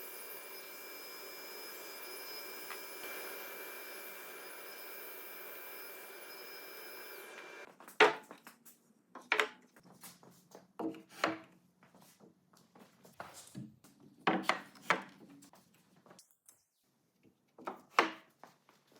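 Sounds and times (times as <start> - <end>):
machine running with thin whine: 0.0 - 7.7.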